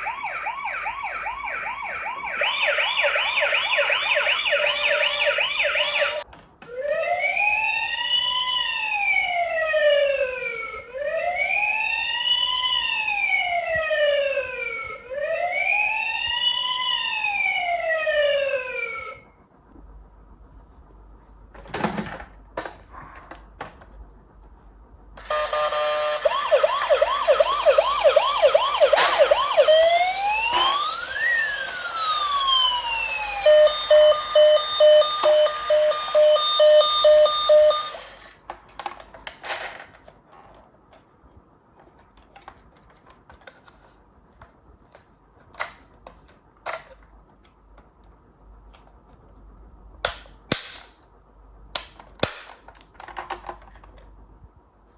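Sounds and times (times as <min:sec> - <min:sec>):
electronic ambulance siren: 0:00.0 - 0:06.2, 0:06.8 - 0:19.3, 0:25.2 - 0:38.3
toy cars clicking and knocking: 0:38.4 - 0:40.6, 0:51.8 - 0:54.1.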